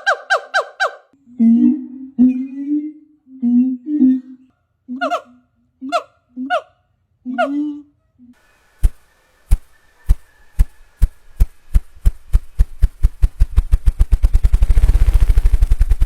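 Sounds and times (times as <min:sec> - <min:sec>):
grouse wing-beat thumps: 0:08.8 - 0:16.0.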